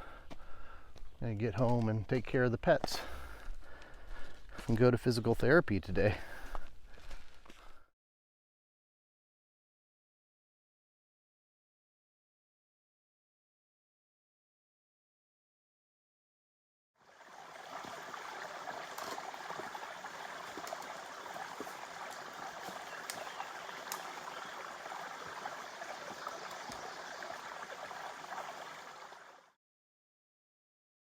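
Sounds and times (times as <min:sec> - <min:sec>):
stream water trickling: 0:17.0 - 0:29.6.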